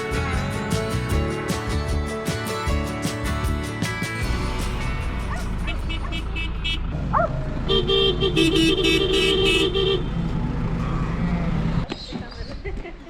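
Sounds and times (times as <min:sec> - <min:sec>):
vehicle engine rumble: 0:00.0 - 0:12.4
horn blast: 0:05.5 - 0:10.4.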